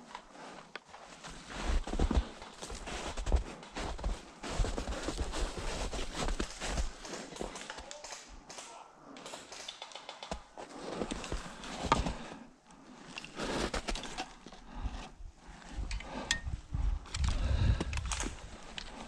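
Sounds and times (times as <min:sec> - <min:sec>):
footsteps: 0:00.0 - 0:08.3, 0:10.3 - 0:12.4.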